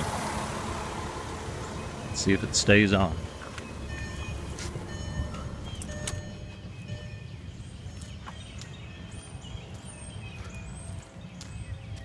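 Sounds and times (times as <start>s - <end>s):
car engine idling: 0.0s - 8.0s.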